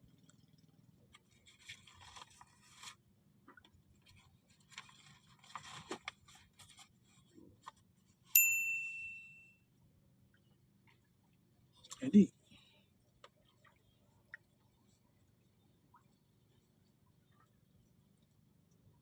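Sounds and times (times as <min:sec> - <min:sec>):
rustling and scraping handling: 0:01.1 - 0:08.5
bright metallic ding: 0:08.4 - 0:09.6.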